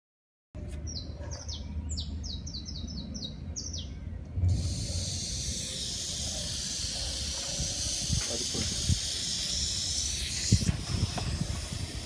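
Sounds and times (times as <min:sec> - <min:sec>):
pressure washer water spraying: 0:04.5 - 0:12.0.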